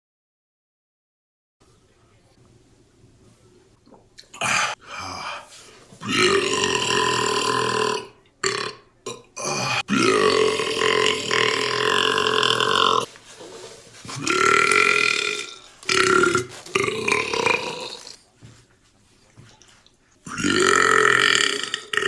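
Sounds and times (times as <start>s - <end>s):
man belching: 4.4s - 5.4s, 6.0s - 13.1s, 14.2s - 18.2s, 20.3s - 22.0s.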